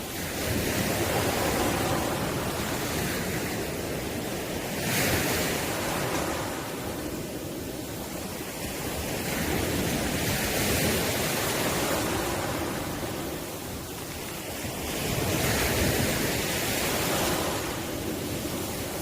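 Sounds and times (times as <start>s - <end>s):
ocean waves breaking: 0.0s - 19.0s.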